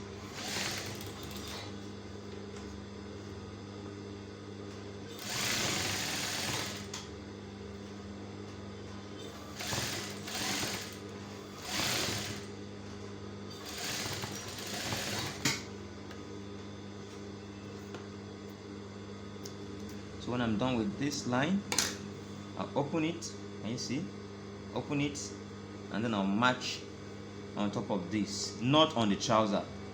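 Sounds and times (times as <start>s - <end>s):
sewing machine stitching: 0.2s - 1.7s, 5.1s - 7.0s, 9.2s - 12.5s, 13.6s - 15.7s.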